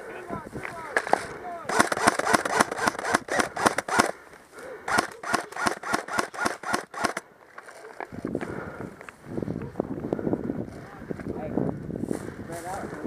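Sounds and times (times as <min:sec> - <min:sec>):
airsoft rifle firing shots: 0:01.0 - 0:04.2, 0:04.9 - 0:07.2.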